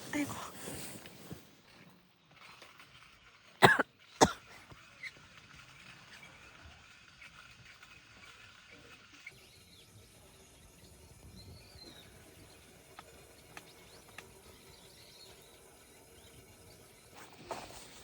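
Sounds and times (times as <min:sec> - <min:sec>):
person coughing: 0:03.6 - 0:04.4.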